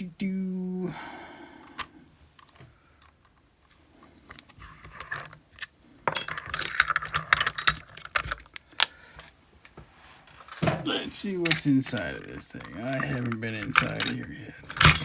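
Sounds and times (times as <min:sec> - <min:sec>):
metal lock parts clinking: 0:04.9 - 0:08.9, 0:11.4 - 0:15.0.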